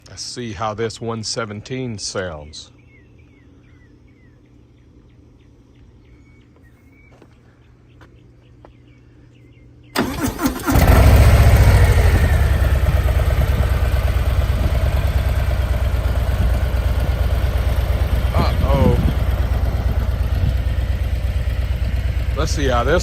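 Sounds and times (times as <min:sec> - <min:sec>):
starter cranking: 0:10.0 - 0:15.2
motorcycle engine idling: 0:10.0 - 0:23.0
motorcycle engine starting: 0:10.0 - 0:23.0.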